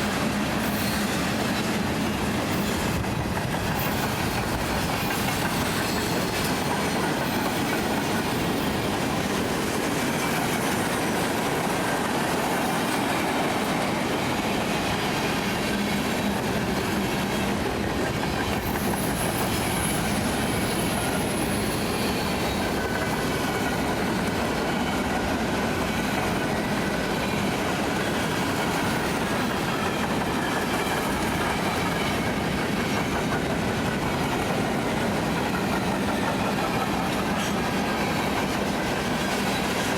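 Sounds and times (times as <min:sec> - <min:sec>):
train wheels clattering on rails: 0:00.0 - 0:39.9.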